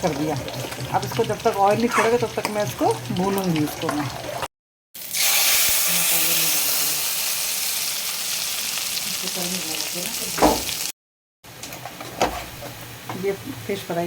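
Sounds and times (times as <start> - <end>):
food sizzling in hot oil: 0.0 - 10.9.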